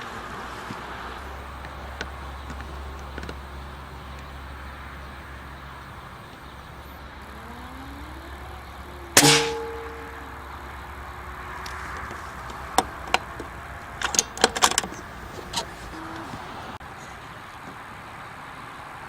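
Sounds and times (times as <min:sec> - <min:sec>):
air rifle shot: 0:09.2 - 0:10.2.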